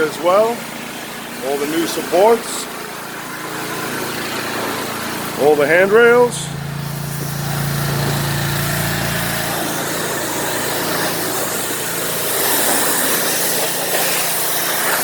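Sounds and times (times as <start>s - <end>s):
small gas engine running: 0.6s - 15.0s
broad hiss: 6.8s - 15.0s.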